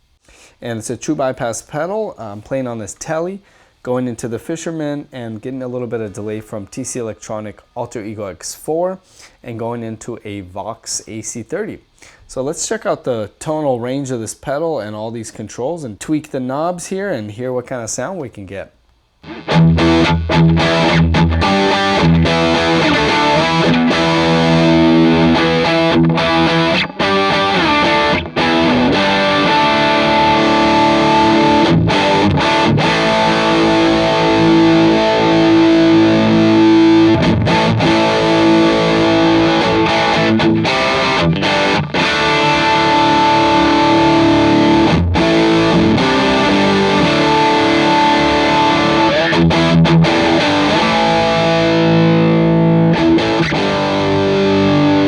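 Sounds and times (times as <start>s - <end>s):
overdriven electric guitar: 19.2s - 55.0s.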